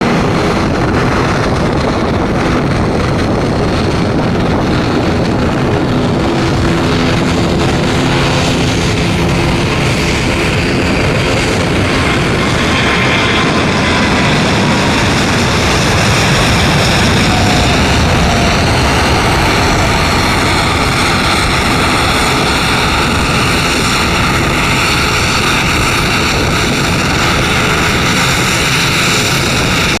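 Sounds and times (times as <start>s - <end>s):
jet engines at takeoff thrust: 0.0s - 30.0s.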